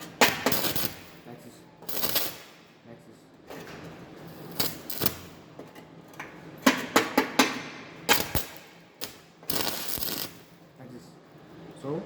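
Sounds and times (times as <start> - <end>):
welding arc crackling: 0.0 - 2.7, 4.2 - 5.5, 6.9 - 10.6.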